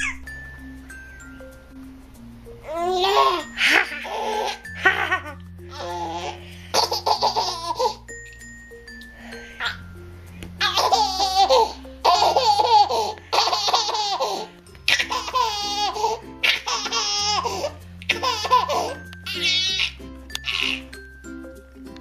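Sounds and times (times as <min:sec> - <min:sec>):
high-pitched laughter: 0:00.0 - 0:00.3, 0:02.9 - 0:08.0, 0:10.6 - 0:21.0.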